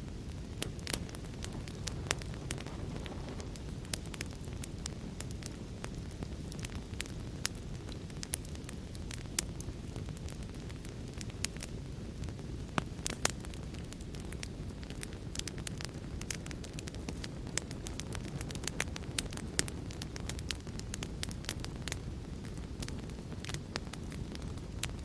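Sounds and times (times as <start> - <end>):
fire crackling and popping: 0.0 - 25.0
low rumble of flames: 0.0 - 25.0.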